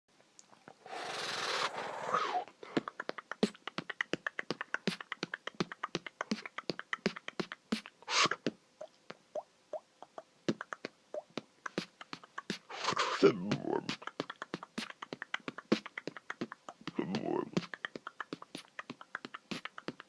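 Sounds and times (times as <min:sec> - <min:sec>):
mouth clicks: 0:00.4 - 0:20.0
breathy hiss: 0:00.7 - 0:03.0, 0:07.7 - 0:08.5, 0:11.7 - 0:14.0.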